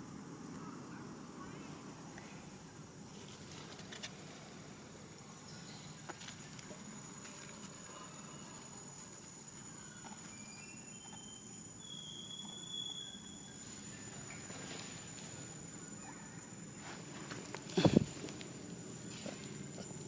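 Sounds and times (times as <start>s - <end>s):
high-pitched insect tone: 0.0s - 20.0s
whistled call: 9.7s - 14.0s.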